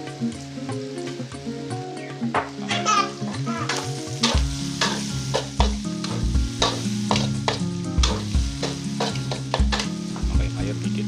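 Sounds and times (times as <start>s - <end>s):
food sizzling in oil: 0.0s - 11.0s
spatula scraping pan: 3.6s - 10.0s.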